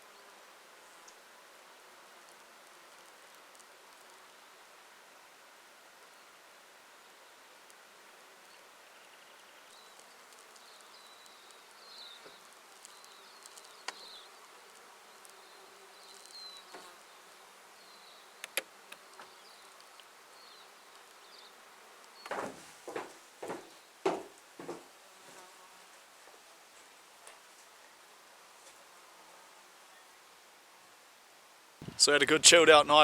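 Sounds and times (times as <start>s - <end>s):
flies buzzing: 0.3s - 5.2s, 9.6s - 26.0s
sharp clicks: 18.4s - 18.7s.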